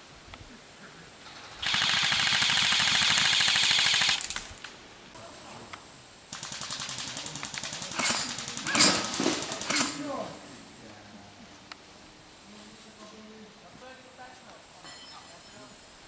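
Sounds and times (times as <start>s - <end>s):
airsoft guns firing full-auto: 1.6s - 4.6s, 6.3s - 10.0s.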